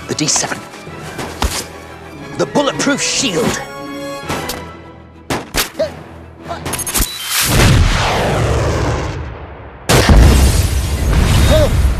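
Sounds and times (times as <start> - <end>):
film music score: 0.0 - 11.9
loud booming blast: 7.5 - 11.9.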